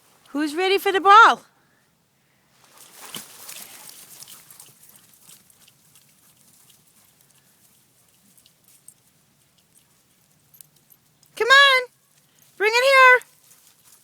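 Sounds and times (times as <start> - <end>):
dogs running through rustling: 2.6 - 9.2, 13.3 - 14.0.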